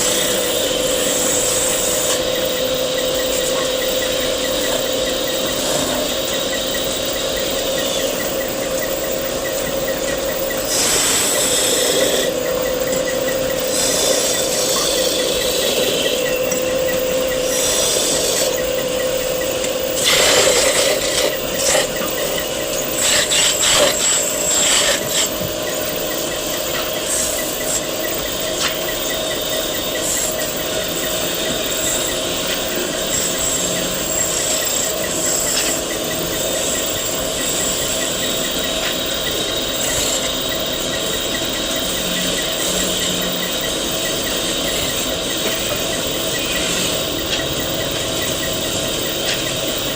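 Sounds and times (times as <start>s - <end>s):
wood lathe humming: 0.0s - 49.9s.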